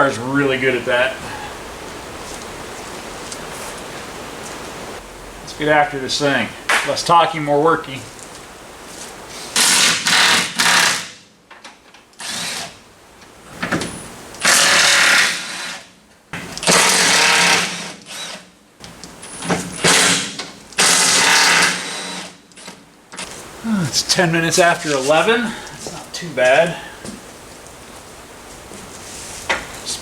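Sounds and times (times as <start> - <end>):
impact wrench bursts: 9.6 - 11.2, 14.4 - 15.8, 16.6 - 18.4, 19.8 - 22.4.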